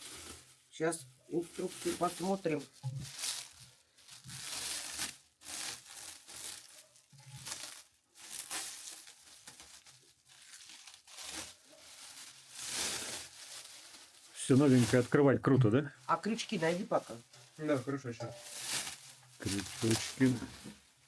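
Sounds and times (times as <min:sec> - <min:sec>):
packaging rustling: 0:01.4 - 0:15.3, 0:16.0 - 0:21.0.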